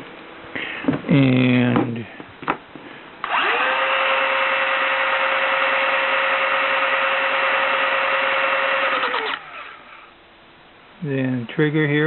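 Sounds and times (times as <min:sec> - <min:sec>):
electric motor whining: 0:03.2 - 0:10.1.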